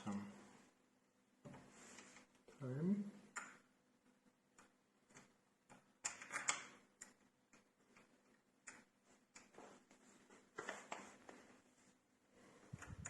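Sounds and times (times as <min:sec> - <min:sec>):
door-lock parts clicking and tapping: 0:04.6 - 0:08.9.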